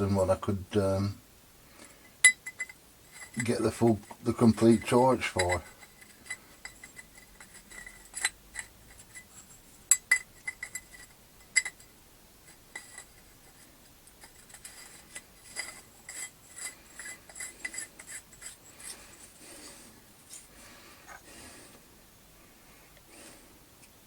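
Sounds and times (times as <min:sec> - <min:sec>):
small metal parts clinking: 0:02.2 - 0:11.9.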